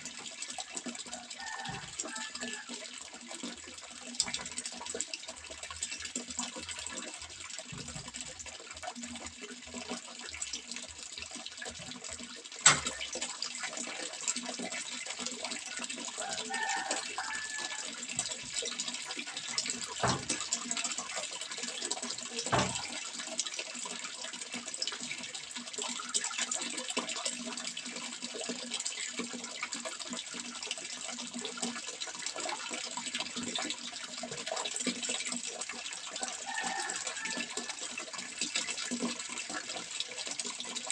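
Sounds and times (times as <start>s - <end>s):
running water splashing: 0.0s - 40.9s.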